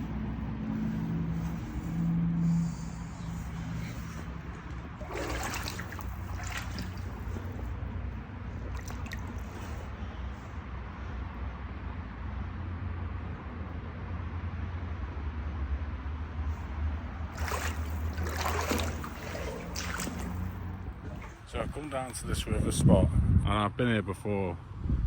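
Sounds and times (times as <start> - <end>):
water splashing: 0.0 - 10.2, 16.6 - 22.1
stream water trickling: 0.0 - 10.5, 16.5 - 22.2.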